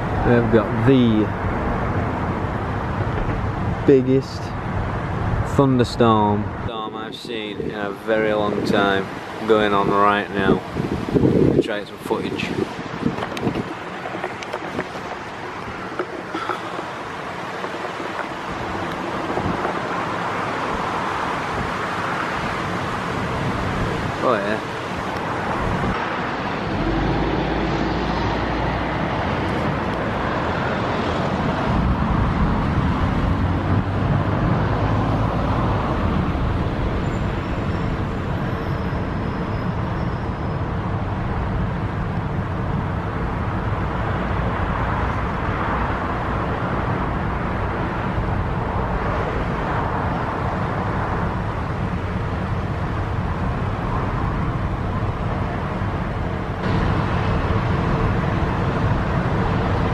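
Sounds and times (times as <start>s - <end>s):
thunderstorm rushing roar: 24.9s - 37.1s, 53.1s - 59.9s.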